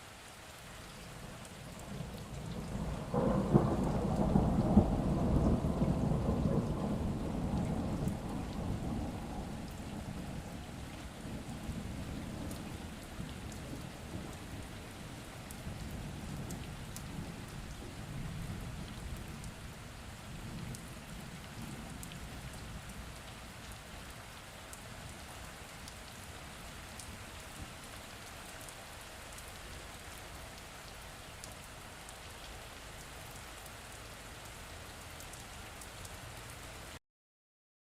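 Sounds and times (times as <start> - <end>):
steady rain: 0.0 - 37.0
distant thunder rumble: 2.0 - 14.6.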